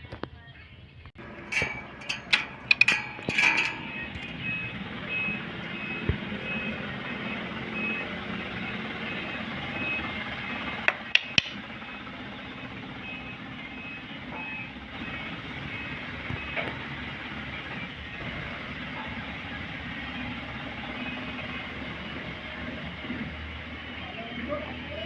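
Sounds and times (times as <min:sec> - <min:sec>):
clicks: 0:01.2 - 0:06.6
machinery hum: 0:01.2 - 0:10.8
electronic warning beeps: 0:01.2 - 0:18.3.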